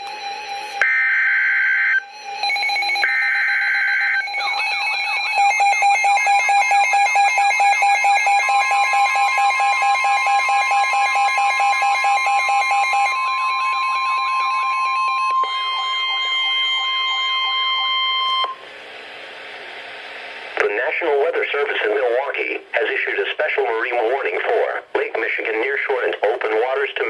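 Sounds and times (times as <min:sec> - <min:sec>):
pulsing alarm tone: 0:00.2 - 0:18.6.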